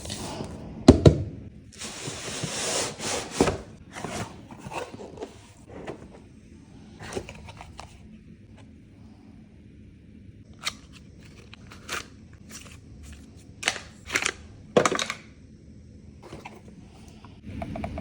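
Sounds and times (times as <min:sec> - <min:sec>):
box parts sliding and rubbing: 0:01.8 - 0:06.3, 0:16.2 - 0:16.8.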